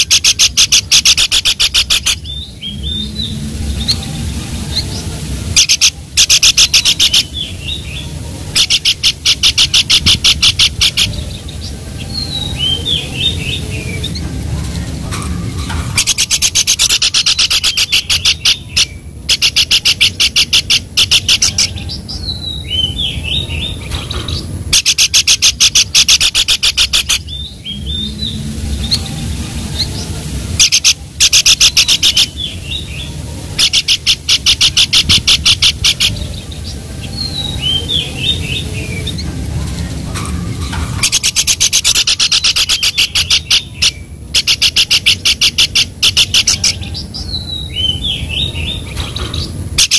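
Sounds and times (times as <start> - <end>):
songbird singing rapid notes: 29.8 - 39.8.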